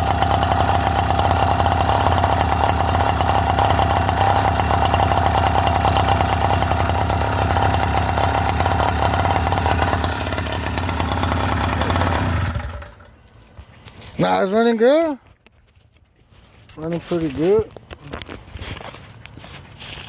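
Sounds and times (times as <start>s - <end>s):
small motorbike engine running: 0.0s - 13.3s.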